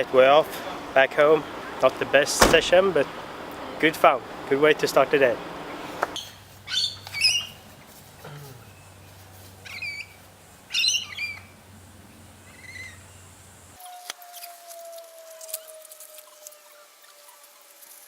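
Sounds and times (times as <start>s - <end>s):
birds chirping: 0.0s - 13.6s.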